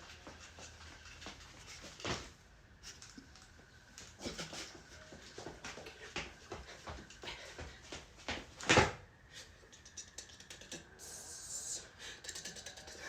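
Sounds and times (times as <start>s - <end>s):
footsteps scuffing on floor: 4.0s - 8.9s.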